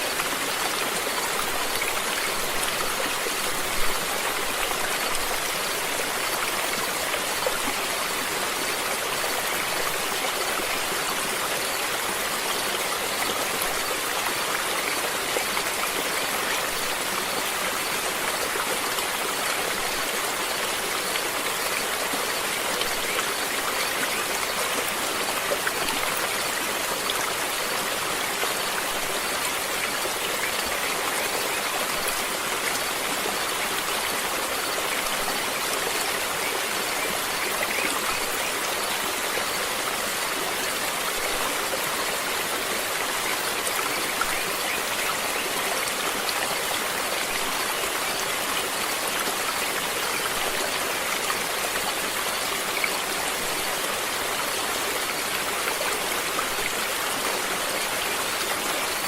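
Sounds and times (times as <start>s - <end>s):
stream water flowing: 0.0s - 59.0s.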